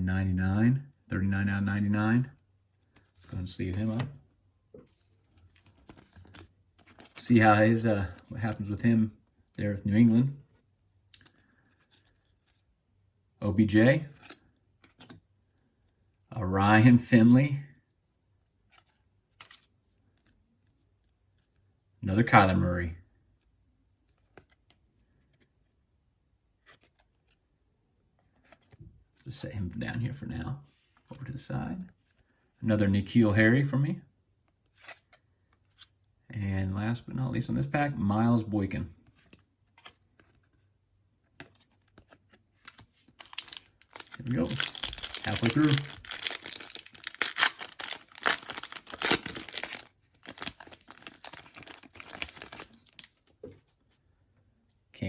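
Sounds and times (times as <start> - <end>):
wrapper tearing and crinkling: 43.2 - 53.1.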